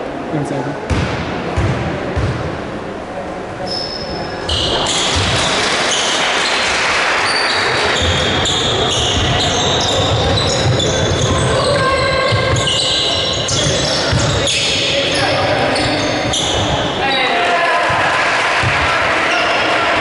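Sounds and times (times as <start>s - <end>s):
crowd voices echoing in hall: 0.0s - 20.0s
basketball bouncing: 0.9s - 2.6s, 4.9s - 6.0s, 7.7s - 14.5s
sneaker squeaks on floor: 3.6s - 17.2s.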